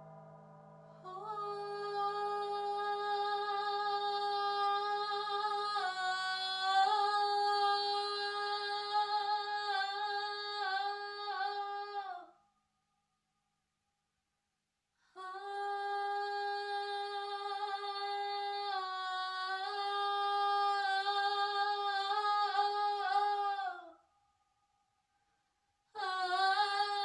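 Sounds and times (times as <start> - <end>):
singing bowl ringing: 0.0 - 1.6
woman singing a held note: 0.9 - 12.3.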